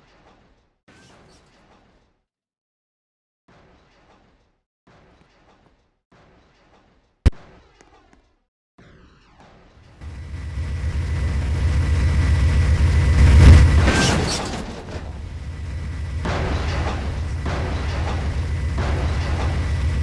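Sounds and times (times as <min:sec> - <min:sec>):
train passing with low rumble: 0:10.0 - 0:20.0.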